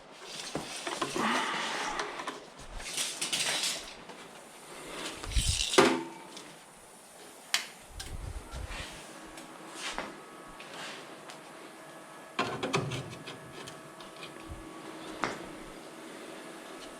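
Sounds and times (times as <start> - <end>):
metal tools scraping and clattering: 2.2 - 4.2, 5.0 - 6.5.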